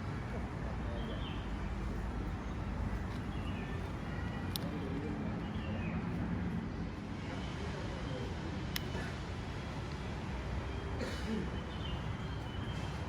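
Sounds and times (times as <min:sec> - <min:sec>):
distant traffic rumble: 0:00.0 - 0:05.6.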